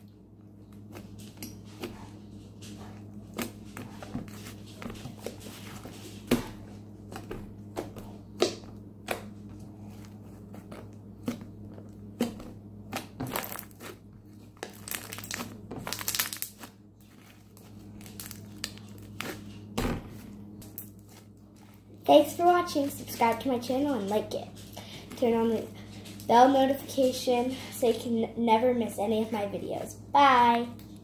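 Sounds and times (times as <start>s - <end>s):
slime popping and squelching: 12.1s - 17.4s
slime crackling: 12.2s - 19.4s.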